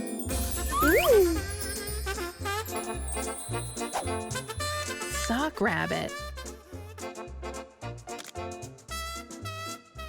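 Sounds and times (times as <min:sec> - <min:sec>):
children's cartoon music: 0:00.0 - 0:07.7
sliding-pitch cartoon effect: 0:00.6 - 0:01.9.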